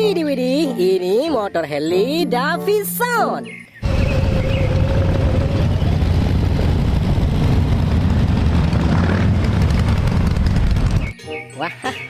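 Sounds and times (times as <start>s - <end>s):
motorcycle engine rumbling: 3.8s - 11.2s.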